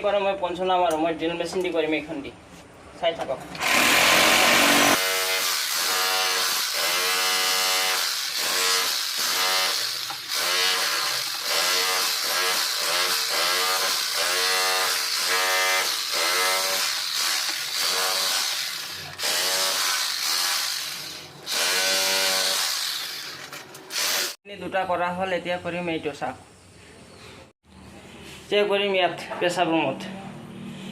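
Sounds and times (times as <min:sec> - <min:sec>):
electric drill whining: 0:03.6 - 0:24.4.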